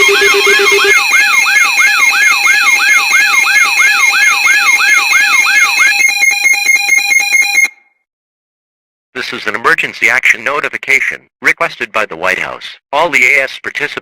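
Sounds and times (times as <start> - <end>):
electronic siren alarm tone: 0.0 - 8.0.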